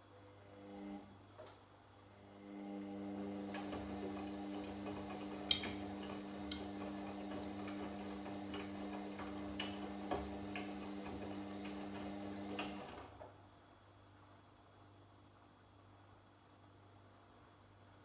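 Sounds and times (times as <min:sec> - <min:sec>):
washing machine motor hum: 0:02.2 - 0:13.2.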